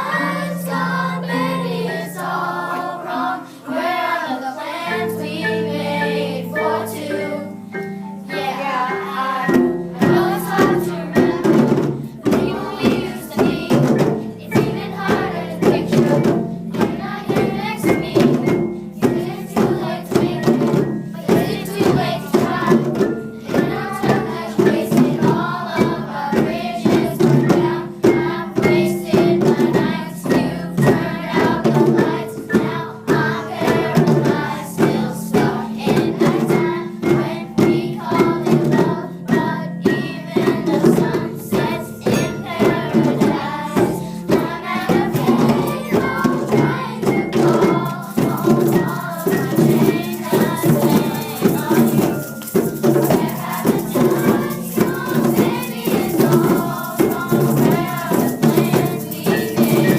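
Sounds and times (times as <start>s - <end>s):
group singing pop song: 0.0s - 7.6s, 8.3s - 59.9s
rattling hand percussion: 8.8s - 59.9s
steady beat: 9.4s - 29.6s, 40.5s - 59.9s.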